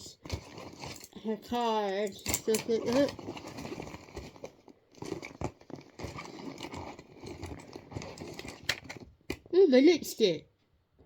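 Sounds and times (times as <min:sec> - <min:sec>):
small objects rustling in a bag: 0:00.0 - 0:09.4.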